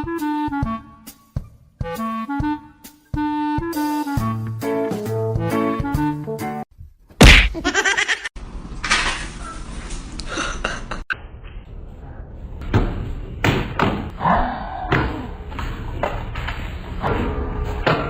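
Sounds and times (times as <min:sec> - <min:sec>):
knocks and thuds: 0:07.2 - 0:07.6
loud thump: 0:07.2 - 0:07.6.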